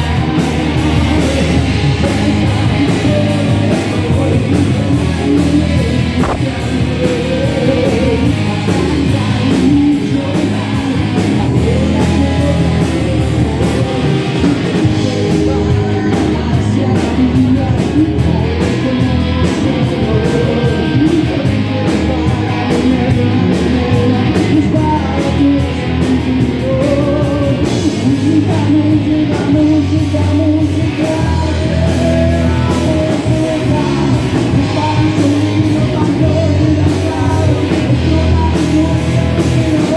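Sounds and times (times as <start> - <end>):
rock song with singing: 0.0 - 39.9.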